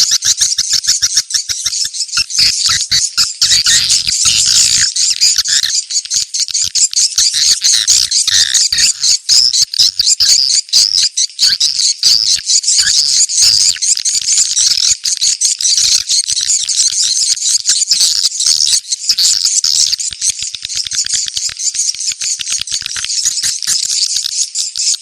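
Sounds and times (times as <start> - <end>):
swiftlets twittering: 0.0 - 8.9, 16.0 - 25.0.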